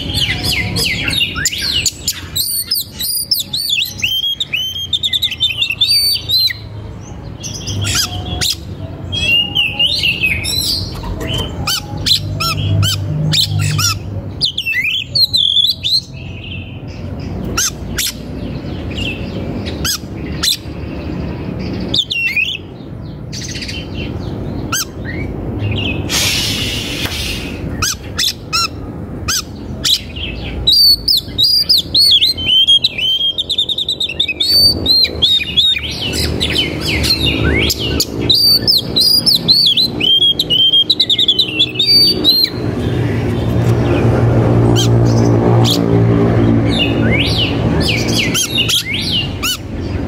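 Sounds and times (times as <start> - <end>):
birds chirping and twittering: 0.0 - 50.0.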